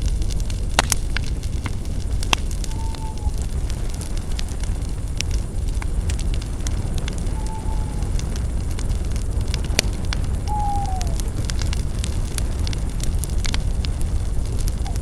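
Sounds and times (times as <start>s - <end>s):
bonfire crackling and popping: 0.0s - 15.0s
fire low rumble: 0.0s - 15.0s
whistle falling in pitch: 10.5s - 11.1s.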